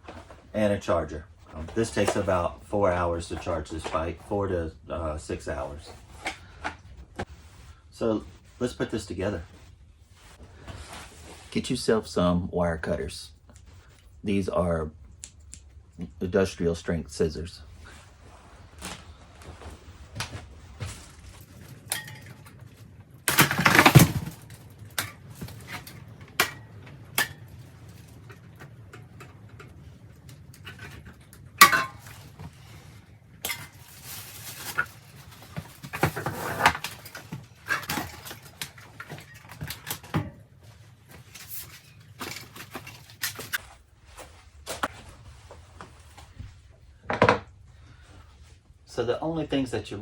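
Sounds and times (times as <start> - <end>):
packaging rustling: 18.6 - 28.8, 30.3 - 40.2, 41.1 - 43.6.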